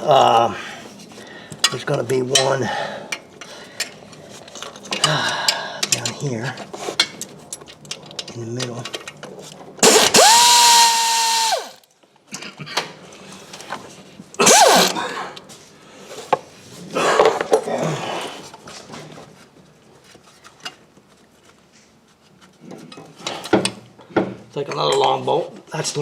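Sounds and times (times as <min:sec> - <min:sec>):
handheld power tool winding down: 0:09.8 - 0:11.8, 0:14.4 - 0:15.0.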